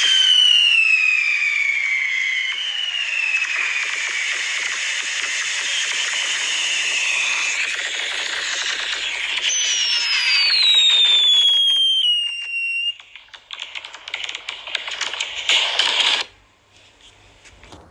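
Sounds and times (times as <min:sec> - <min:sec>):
firework whistle sliding down: 0:00.0 - 0:04.7
fireworks crackling: 0:17.6 - 0:17.9.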